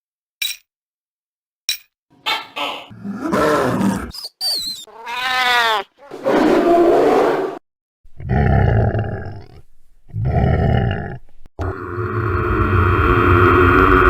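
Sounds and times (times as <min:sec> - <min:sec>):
monster howl: 0:02.9 - 0:04.1, 0:10.4 - 0:14.0
harsh monster roar: 0:02.9 - 0:04.2, 0:08.2 - 0:14.0
low rumbling growls: 0:08.2 - 0:14.0.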